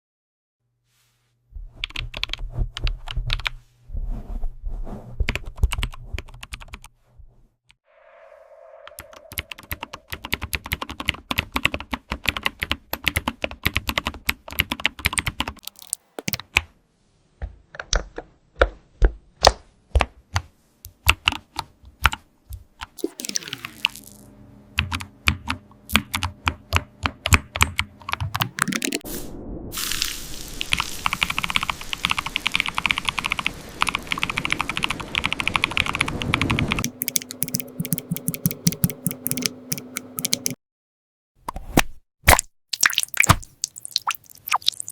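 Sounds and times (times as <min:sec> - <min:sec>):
computer keyboard typing: 0:09.4 - 0:16.4, 0:30.7 - 0:40.6.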